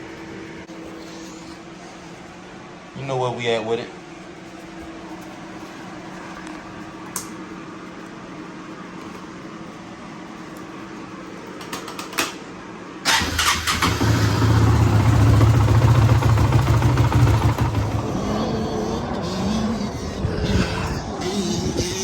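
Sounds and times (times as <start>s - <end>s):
single-cylinder engine running: 13.0s - 19.2s.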